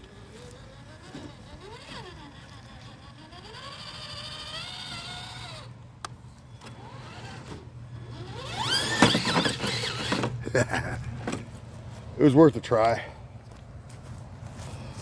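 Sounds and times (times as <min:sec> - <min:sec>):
electric motor and gears whining: 0:00.0 - 0:11.6.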